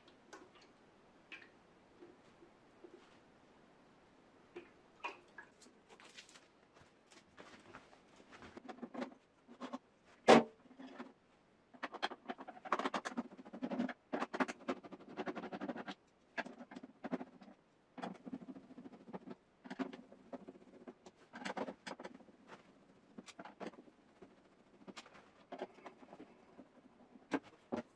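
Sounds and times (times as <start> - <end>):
plastic parts clicking and rattling: 11.8 - 22.4, 23.1 - 27.9.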